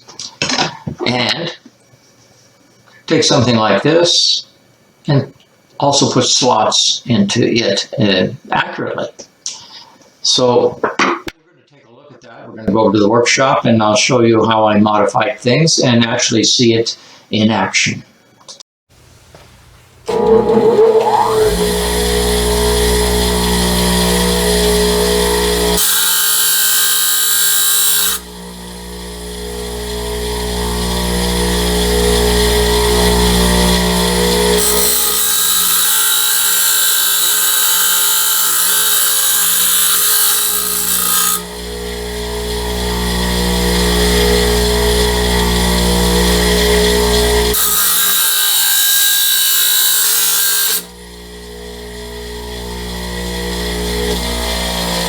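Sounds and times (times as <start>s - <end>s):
bench grinder motor humming: 20.0s - 55.0s
wheel grinding metal: 20.1s - 55.0s.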